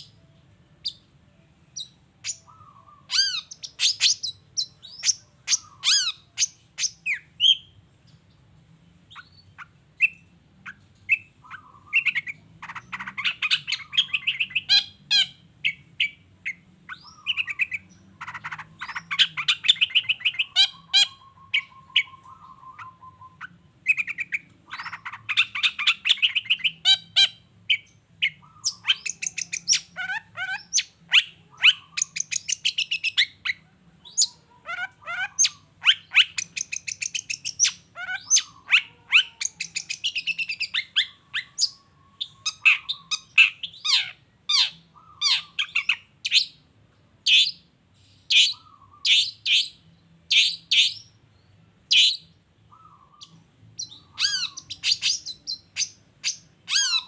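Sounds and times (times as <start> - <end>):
bird chattering trills: 1.8 - 7.6, 9.1 - 33.6, 34.2 - 46.4, 51.9 - 57.0
low drawn-out bird whistles: 19.9 - 24.2.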